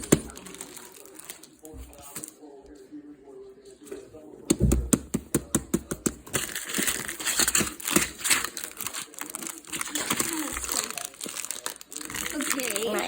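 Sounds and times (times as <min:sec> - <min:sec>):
candy wrappers crinkling: 0:00.0 - 0:02.4, 0:06.2 - 0:13.0.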